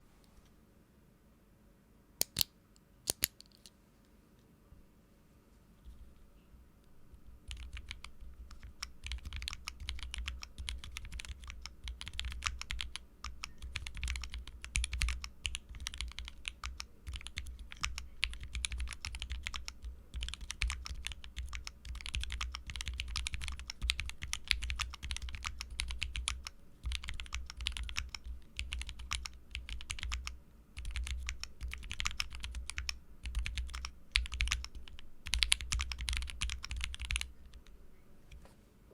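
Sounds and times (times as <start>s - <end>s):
fast mechanical keyboard typing: 7.4s - 37.7s.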